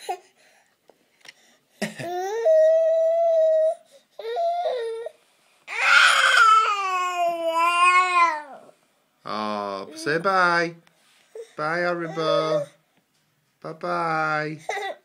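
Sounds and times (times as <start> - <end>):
baby crying: 2.0 - 8.7, 14.6 - 15.0.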